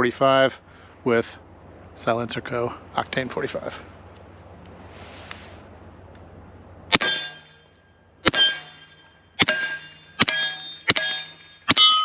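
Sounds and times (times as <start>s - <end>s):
suppressed pistol shots: 8.2s - 8.7s, 9.4s - 12.0s
bullet clanging on metal target: 8.3s - 12.0s.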